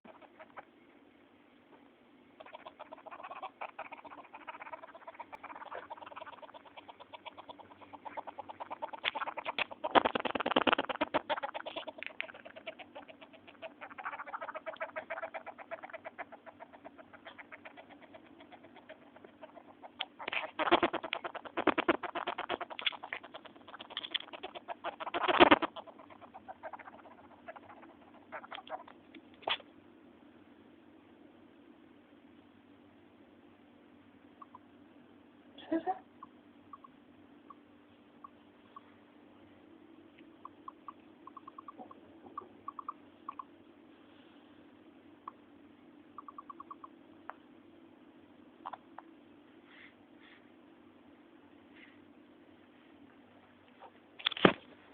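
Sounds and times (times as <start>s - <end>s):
pet mouse chattering clicks: 2.4s - 29.6s, 34.4s - 34.6s, 36.2s - 37.6s, 40.4s - 43.5s, 46.2s - 47.4s.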